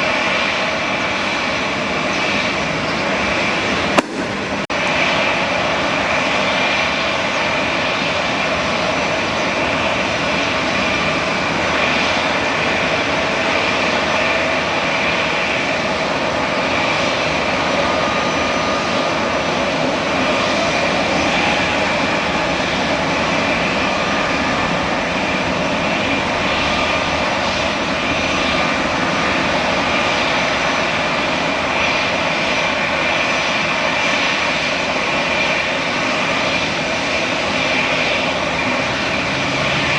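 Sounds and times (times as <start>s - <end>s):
high engine whine: 0.0s - 39.9s
jet engines running: 0.0s - 39.9s.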